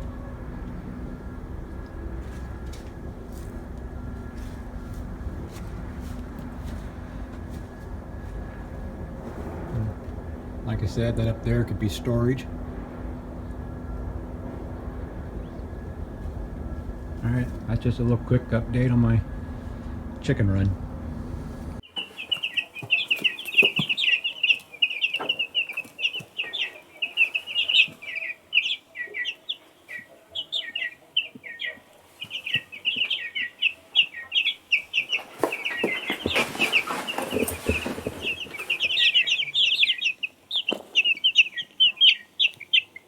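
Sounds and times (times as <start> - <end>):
chickens peeping: 0.0 - 9.0, 14.8 - 43.0
rushing noise: 0.0 - 21.8.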